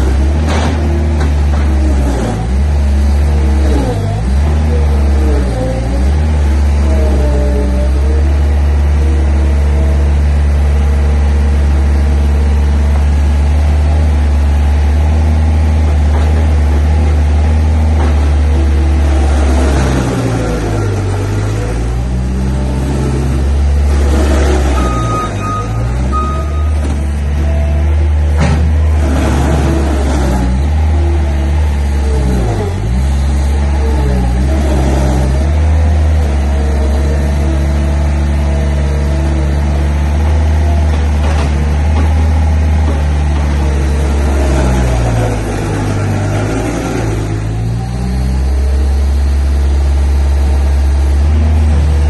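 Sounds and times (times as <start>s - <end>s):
loader engine running: 0.0s - 52.0s
short high beeps: 24.8s - 26.8s.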